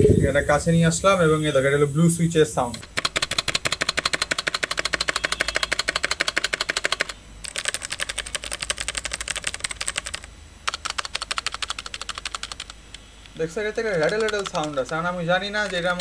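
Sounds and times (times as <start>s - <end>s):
mechanical keyboard keys clicking: 2.7s - 13.0s, 13.7s - 16.0s.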